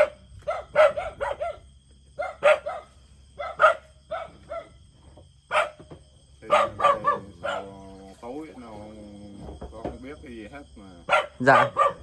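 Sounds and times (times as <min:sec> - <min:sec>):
dog barking: 0:00.0 - 0:04.8, 0:05.5 - 0:07.8, 0:11.0 - 0:12.0.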